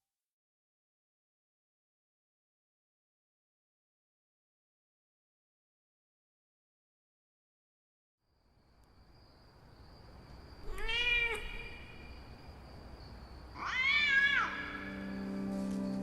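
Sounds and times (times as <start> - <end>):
cat meowing: 10.6 - 11.8, 13.6 - 14.9.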